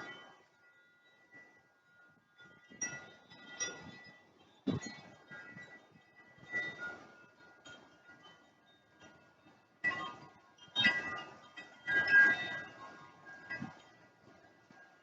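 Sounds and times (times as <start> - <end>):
wind chimes ringing: 0.0 - 15.0
gusty wind: 2.4 - 8.6, 9.7 - 15.0.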